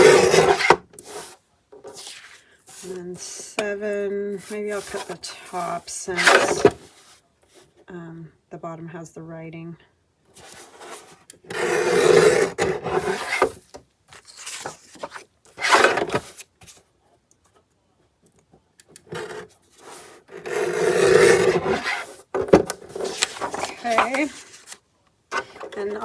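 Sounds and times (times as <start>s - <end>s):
paper trimmer blade scraping: 0.0s - 1.3s, 11.0s - 13.6s, 15.6s - 16.2s, 19.1s - 22.2s, 23.0s - 24.8s.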